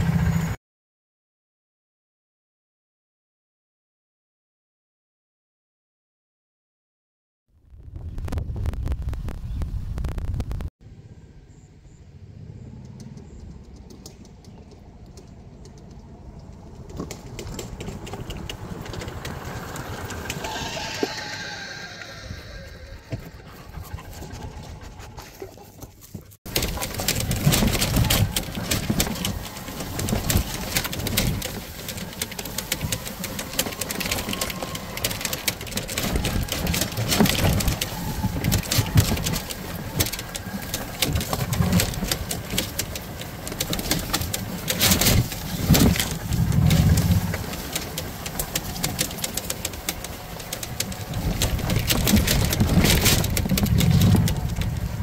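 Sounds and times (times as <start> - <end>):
small vehicle engine rumbling: 0.0 - 0.6, 7.7 - 55.0
machine rattling and knocking: 26.5 - 55.0.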